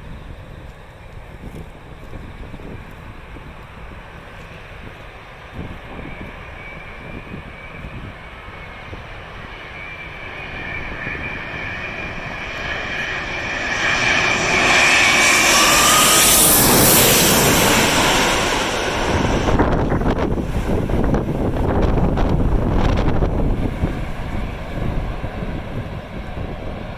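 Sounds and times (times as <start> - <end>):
jet airliner passing overhead: 0.0 - 26.9.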